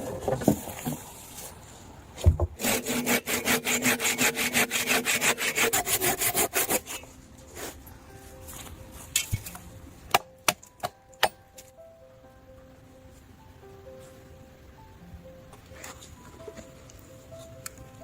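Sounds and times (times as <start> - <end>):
hand saw cutting wood: 2.6 - 7.8.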